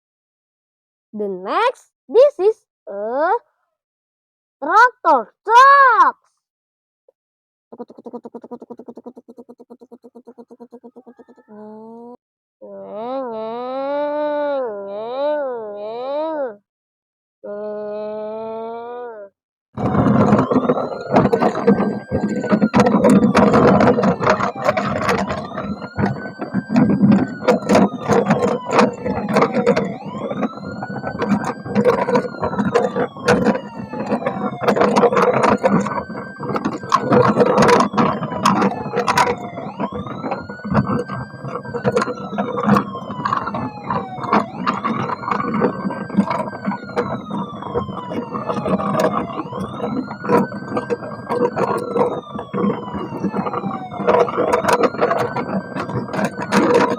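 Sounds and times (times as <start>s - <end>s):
electronic toy siren wailing: 7.7s - 16.6s, 17.4s - 56.9s
plastic toy vehicles clattering: 19.8s - 56.9s.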